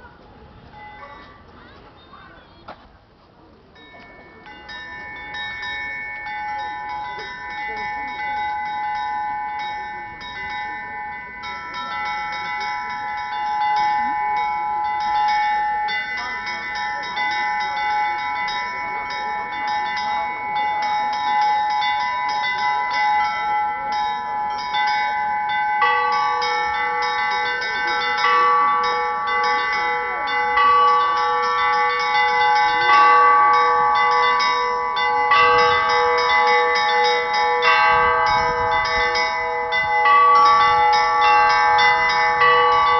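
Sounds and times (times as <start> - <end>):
middle church bells ringing: 0.0 - 1.8, 3.8 - 42.9
lower church bells: 0.0 - 2.4, 3.5 - 42.9
small high church bells: 0.0 - 2.4, 3.5 - 42.9.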